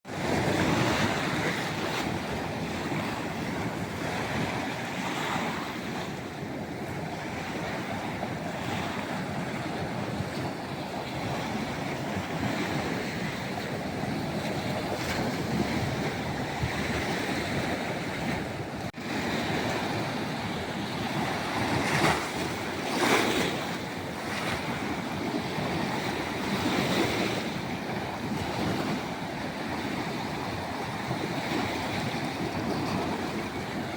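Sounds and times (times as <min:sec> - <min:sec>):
wind buffeting microphone: 0:00.0 - 0:33.9
sea waves washing onto shore: 0:00.1 - 0:33.9.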